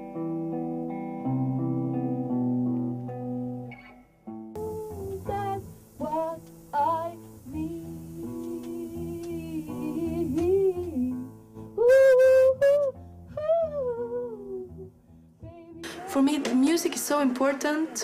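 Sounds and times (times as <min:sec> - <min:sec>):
slow guitar tune: 0:00.0 - 0:16.6
person humming or singing: 0:04.6 - 0:14.9.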